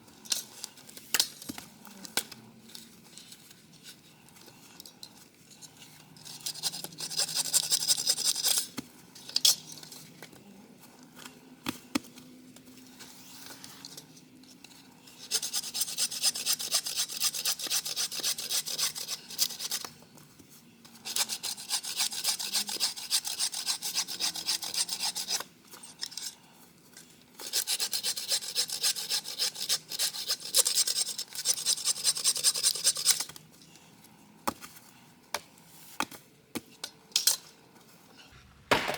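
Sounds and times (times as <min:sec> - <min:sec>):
hand saw cutting wood: 0:15.2 - 0:19.8, 0:21.0 - 0:25.4, 0:27.4 - 0:33.3.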